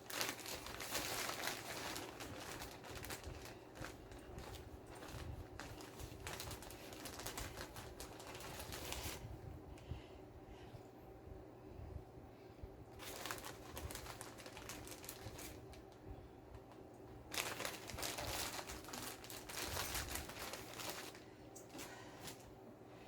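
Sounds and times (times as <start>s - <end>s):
food packaging crinkling: 0.0s - 9.3s, 13.0s - 22.5s
faint steady hum: 0.0s - 23.0s.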